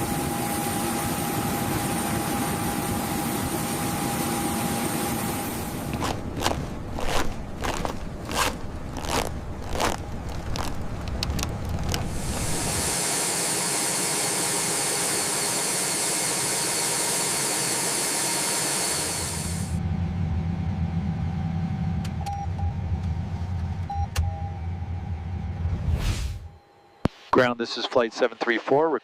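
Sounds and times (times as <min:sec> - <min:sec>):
low hum: 0:00.0 - 0:14.8, 0:19.2 - 0:27.2
low rumble: 0:05.2 - 0:13.0, 0:19.8 - 0:26.6
sharp clicks and knocks: 0:06.0 - 0:12.1
loud steady hiss: 0:12.1 - 0:14.1.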